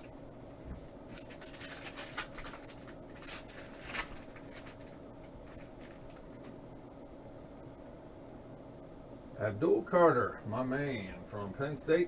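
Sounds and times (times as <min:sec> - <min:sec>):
trading cards rustling: 0:00.0 - 0:06.6.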